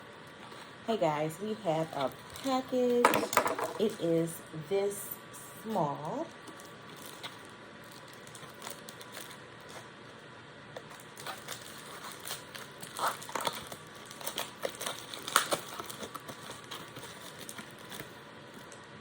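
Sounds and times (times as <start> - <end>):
packaging crinkling and crackling: 1.5 - 4.0, 6.0 - 19.0.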